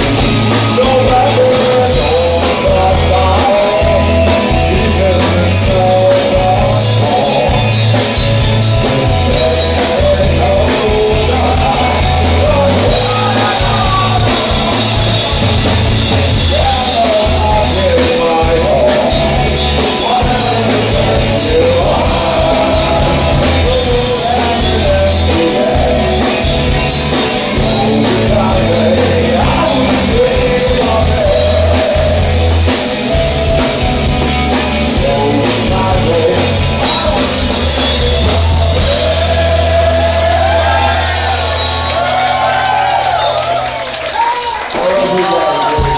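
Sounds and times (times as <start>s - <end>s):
drum kit with washy cymbals: 0.0s - 42.8s
bass: 0.0s - 45.9s
guitars: 0.0s - 45.9s.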